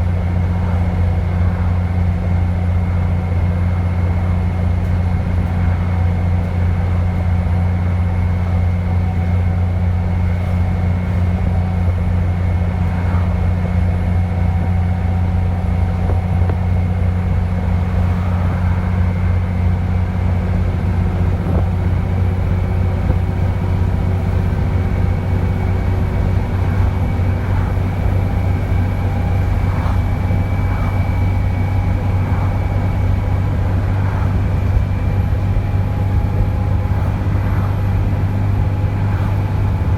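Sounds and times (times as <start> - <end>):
bus diesel engine drone: 0.0 - 39.9.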